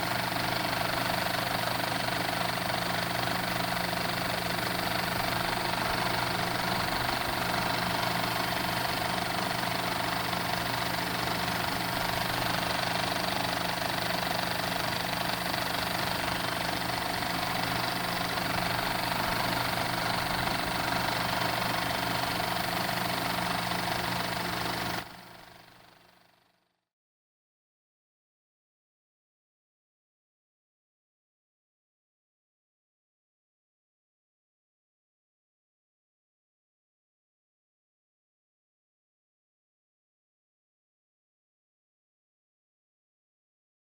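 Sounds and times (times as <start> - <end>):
film projector whirring: 0.0 - 26.2.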